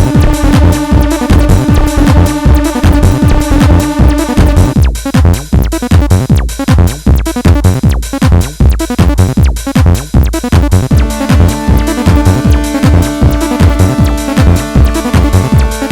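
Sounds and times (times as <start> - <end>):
held synth chord: 0.0 - 4.8, 11.0 - 15.9
acid synth bassline: 0.0 - 15.9
drum machine beat: 0.0 - 15.9.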